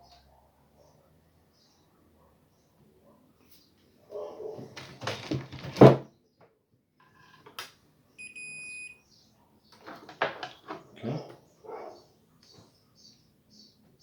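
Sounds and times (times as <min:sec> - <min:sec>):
tools and parts clattering: 0:09.8 - 0:10.9.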